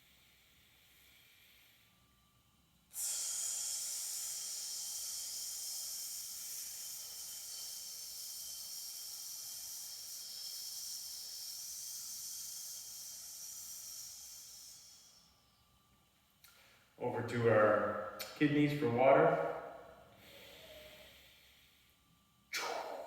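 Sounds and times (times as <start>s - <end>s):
person exhaling a hiss through teeth: 2.9s - 15.3s, 20.2s - 21.7s, 22.5s - 23.0s.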